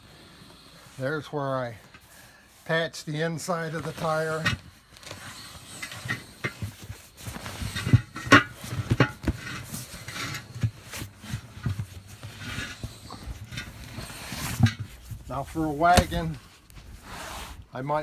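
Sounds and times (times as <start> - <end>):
knocks and thuds of tire handling: 5.7 - 17.0.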